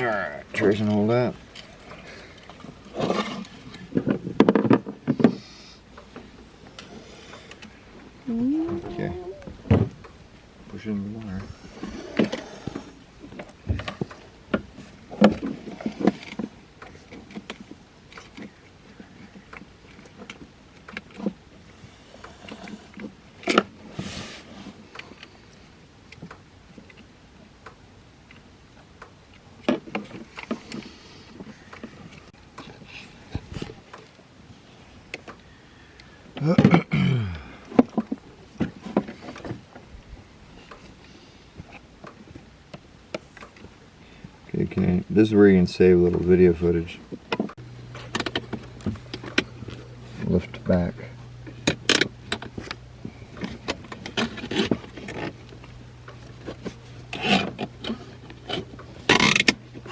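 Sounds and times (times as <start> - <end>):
wires and plastic parts clicking: 47.2 - 59.9.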